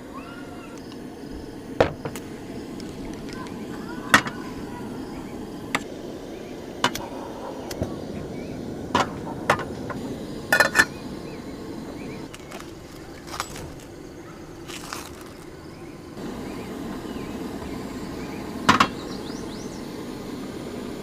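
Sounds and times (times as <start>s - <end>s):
steady low rumble: 0.8s - 21.0s
utensils knocking on cookware: 10.5s - 11.0s.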